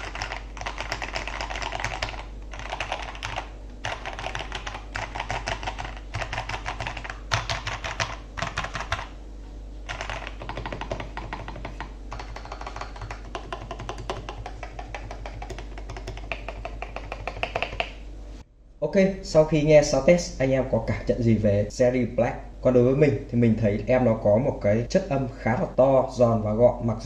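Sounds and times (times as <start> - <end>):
mechanical keyboard typing: 0.0 - 9.2, 9.9 - 18.0.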